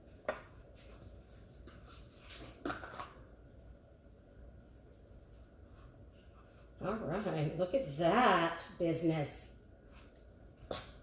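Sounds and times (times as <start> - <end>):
low room hum: 0.0 - 11.0.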